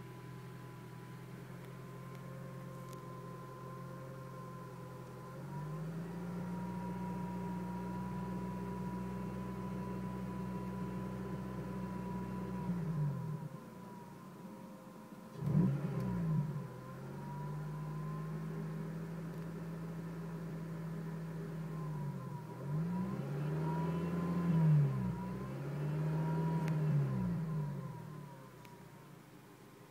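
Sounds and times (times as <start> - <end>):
car engine revving: 15.3 - 19.4, 21.7 - 28.6.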